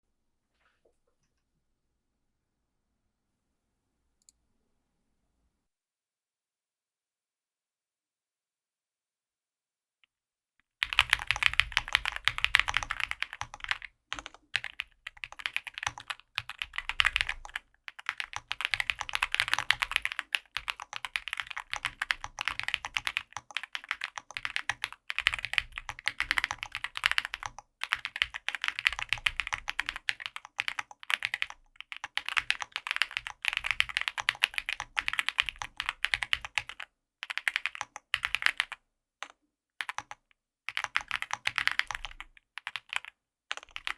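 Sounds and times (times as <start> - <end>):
mechanical keyboard typing: 10.8 - 43.9.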